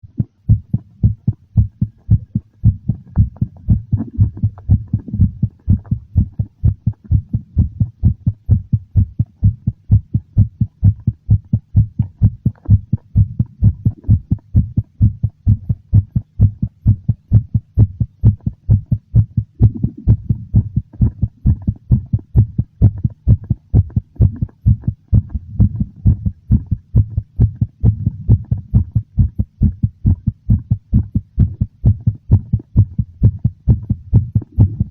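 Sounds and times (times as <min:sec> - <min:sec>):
heartbeat thuds: 0:00.1 - 0:34.9.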